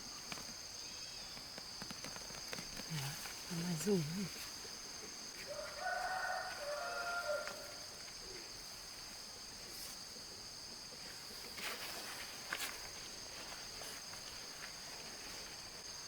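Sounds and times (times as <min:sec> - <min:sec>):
rooster crowing: 0:05.4 - 0:08.0.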